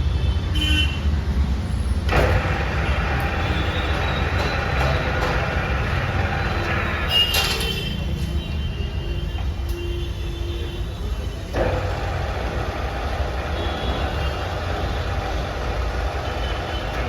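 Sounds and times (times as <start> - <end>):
whirring mechanical noise: 0.0 - 17.0
lathe humming: 2.1 - 7.7, 11.5 - 17.0.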